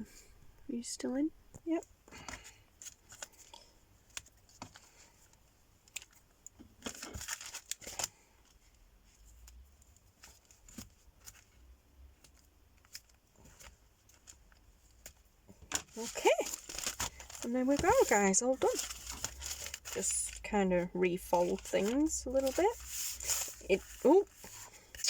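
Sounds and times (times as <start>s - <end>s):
paper rustling: 12.2s - 25.0s.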